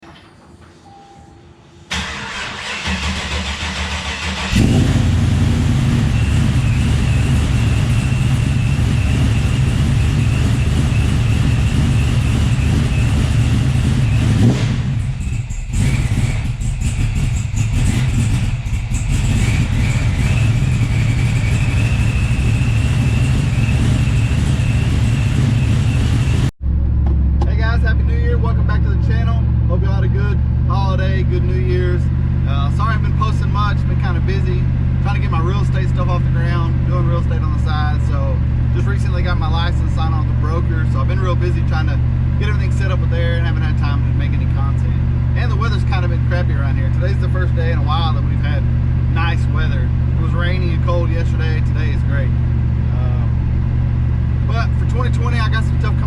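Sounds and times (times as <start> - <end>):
high whine: 0.0 - 3.0, 4.4 - 56.0
engine starting and idling: 1.9 - 26.5.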